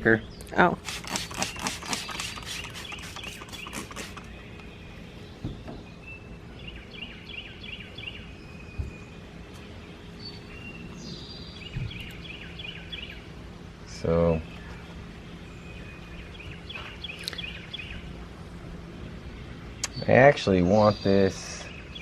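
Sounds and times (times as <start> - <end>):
bird chirping: 0.2 - 13.3, 14.3 - 18.2
backing paper rustling and peeling: 0.8 - 4.3.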